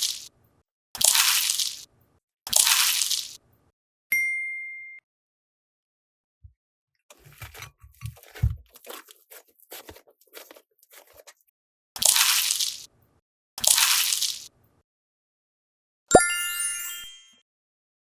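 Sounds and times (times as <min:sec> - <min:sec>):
crunchy slime crackling: 0:12.0 - 0:12.9.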